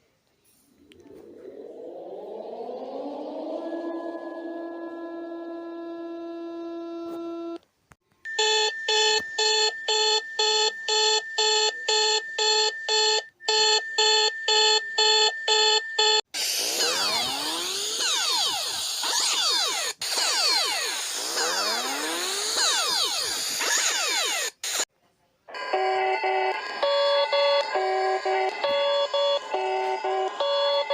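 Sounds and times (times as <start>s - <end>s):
overlapping siren-like sweeps: 0.7s - 7.6s, 16.4s - 24.6s, 25.6s - 30.9s
steady chord-like alarm tone: 1.6s - 7.6s
pulsing on-off beeping tone: 14.6s - 24.6s.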